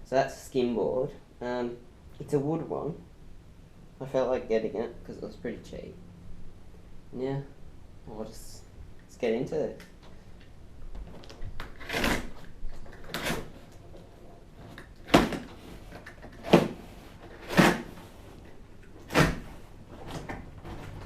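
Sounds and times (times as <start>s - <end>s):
cardboard box scraping: 11.7s - 18.5s.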